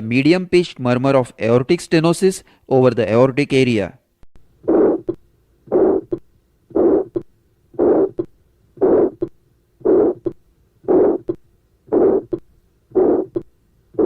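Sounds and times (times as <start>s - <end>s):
crisp heart sound: 4.6s - 14.0s
harsh heart murmur: 4.6s - 14.0s
heartbeat through stethoscope: 4.7s - 14.0s.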